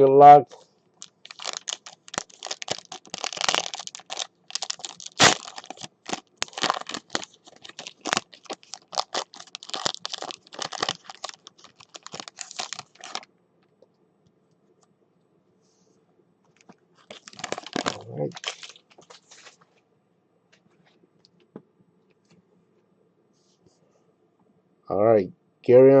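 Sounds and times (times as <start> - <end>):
card pack wrapper tearing: 1.0 - 13.3, 17.0 - 19.4.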